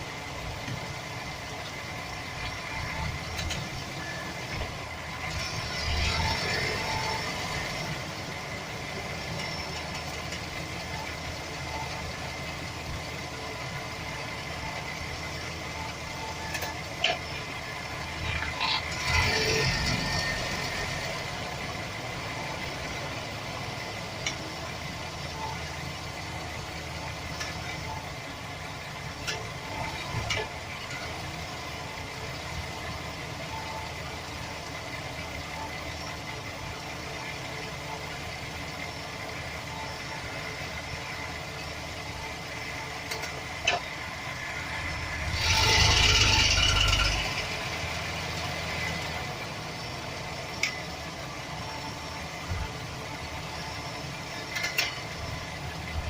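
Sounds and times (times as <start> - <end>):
engine idling: 0.0 - 56.0
rattle and clicks: 45.3 - 47.7, 54.4 - 55.2.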